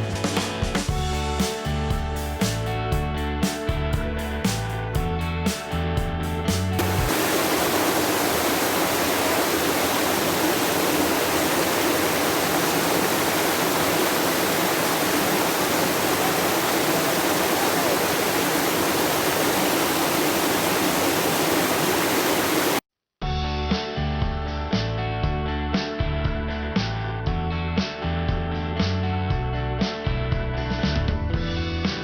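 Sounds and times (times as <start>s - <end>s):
guitar music: 0.0s - 7.1s
waterfall pouring into pool: 6.8s - 22.8s.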